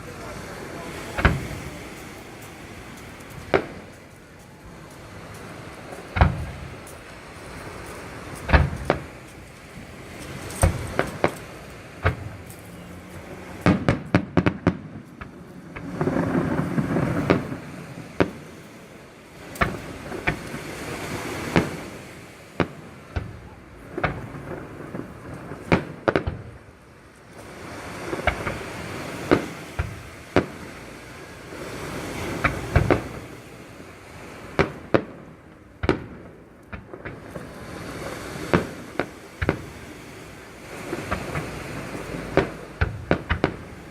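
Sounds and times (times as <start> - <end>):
fireworks bangs: 0.0 - 43.9
fireworks crackling: 0.0 - 43.9
rumbling firework burst: 0.0 - 43.9.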